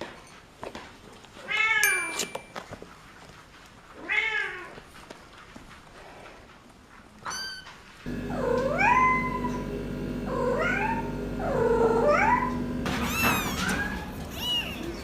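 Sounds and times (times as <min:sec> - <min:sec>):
kitten meowing: 0:12.0 - 0:15.0.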